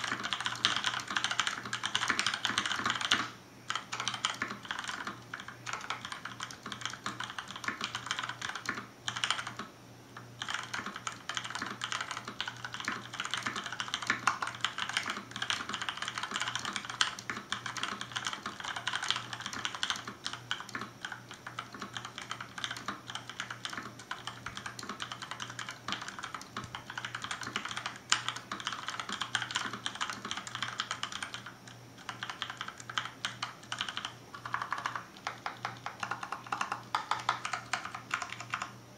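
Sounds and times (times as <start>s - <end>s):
typing on mechanical keyboard: 0.0s - 9.7s, 10.4s - 38.8s.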